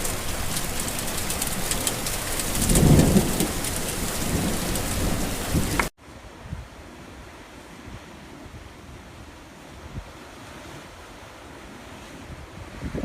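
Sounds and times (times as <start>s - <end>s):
thunder rumble: 0.0s - 5.9s
heavy rain: 0.0s - 7.6s.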